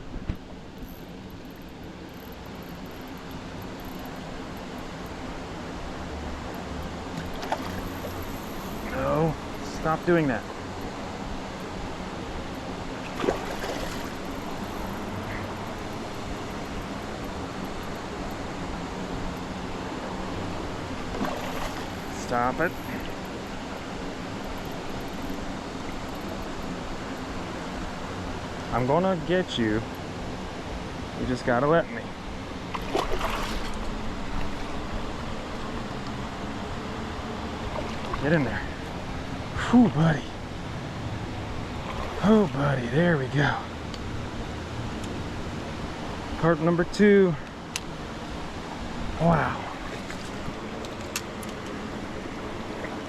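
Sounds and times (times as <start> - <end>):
creek water rushing: 4.3 - 29.0, 30.4 - 53.0
water splashes: 7.2 - 8.2, 13.0 - 15.7, 21.0 - 23.1, 32.7 - 35.3, 37.5 - 38.5, 41.7 - 42.6, 49.2 - 50.9.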